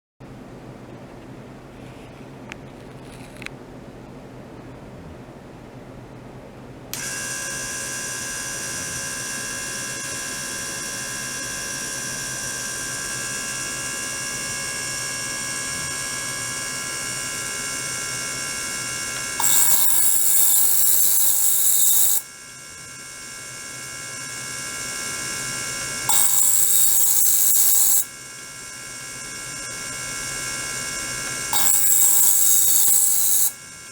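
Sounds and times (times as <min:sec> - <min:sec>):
pump electric buzz: 0:06.9 - 0:33.9.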